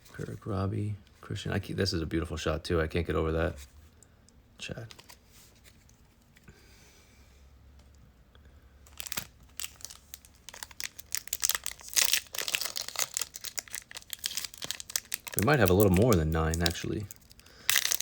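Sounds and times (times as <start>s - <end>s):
wrapper crinkling: 8.9s - 18.0s
wrapper tearing: 8.9s - 18.0s.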